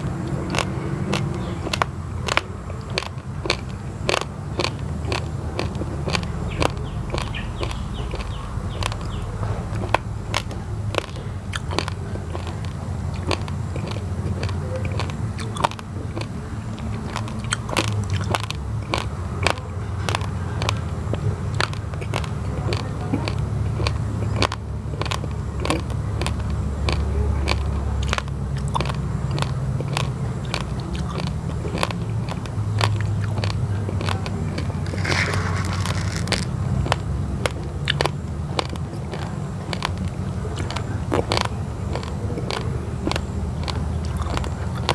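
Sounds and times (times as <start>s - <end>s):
steady low rumble: 0.0s - 14.4s
crunchy chewing of raw rice: 0.0s - 44.9s.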